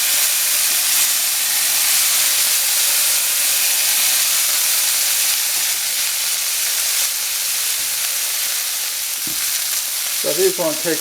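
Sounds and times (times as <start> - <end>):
shellfish sizzling in hot oil: 0.0 - 11.0.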